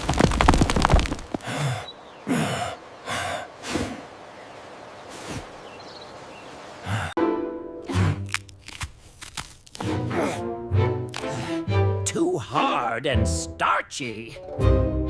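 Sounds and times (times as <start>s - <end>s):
background music: 7.2s - 8.9s, 9.7s - 15.0s.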